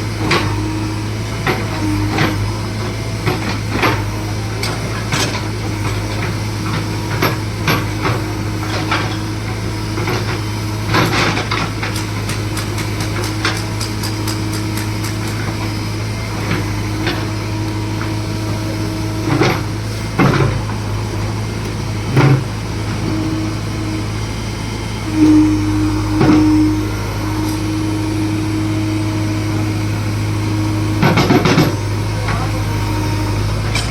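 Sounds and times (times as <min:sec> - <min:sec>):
excavator diesel engine running: 0:00.0 - 0:33.9
knocks and clanks: 0:10.0 - 0:15.7, 0:31.0 - 0:32.4.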